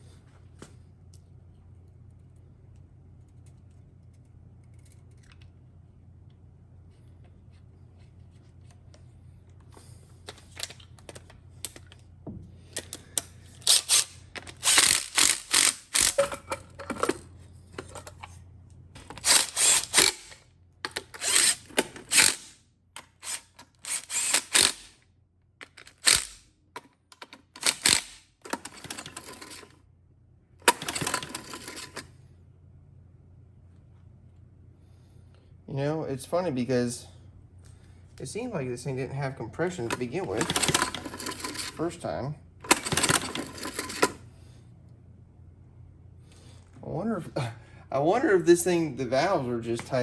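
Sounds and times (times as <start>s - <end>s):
faint steady hum: 0.0s - 50.0s
metal parts scraping and clattering: 13.6s - 18.4s, 19.0s - 20.4s, 27.6s - 29.8s, 30.7s - 32.1s, 39.8s - 42.0s, 42.7s - 44.2s.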